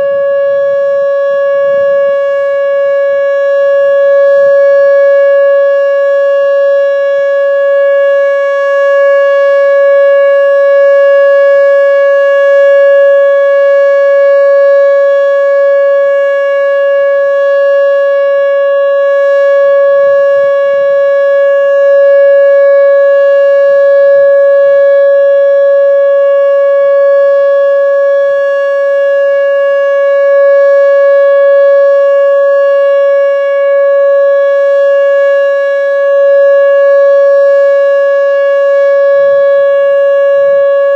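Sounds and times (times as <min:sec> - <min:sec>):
warning siren steady tone: 0:00.0 - 0:40.9.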